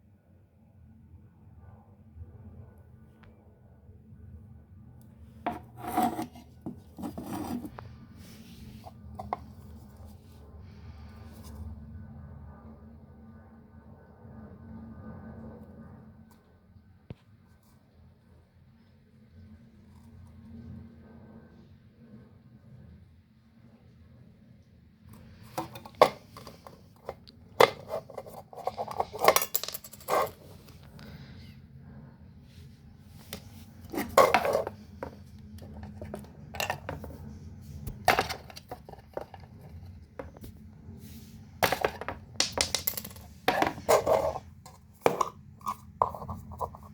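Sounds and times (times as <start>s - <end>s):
rasping scrapes: 5.5s - 9.4s, 25.4s - 30.6s, 33.2s - 37.2s, 43.2s - 46.9s
small hard parts clattering: 25.2s - 31.0s, 33.2s - 40.5s, 41.6s - 46.9s.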